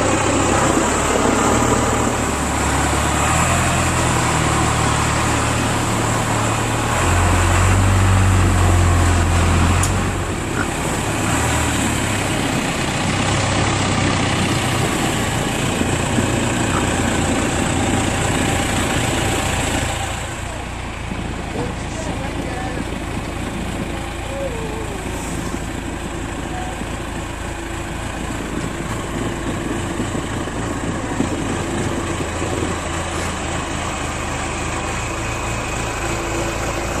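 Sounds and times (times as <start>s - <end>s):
diesel engine running: 0.0s - 37.0s.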